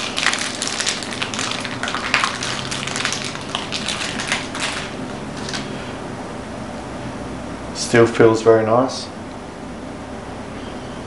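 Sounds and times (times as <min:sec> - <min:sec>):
packaging crinkling and rustling: 0:00.0 - 0:05.8.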